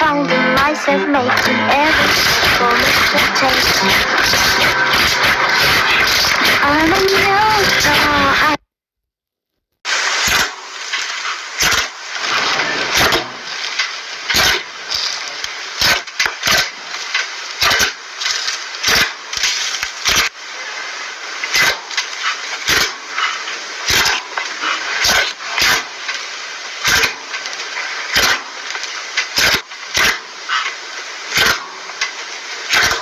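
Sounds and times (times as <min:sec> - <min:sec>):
slime crackling hiss: 0:09.9 - 0:33.0.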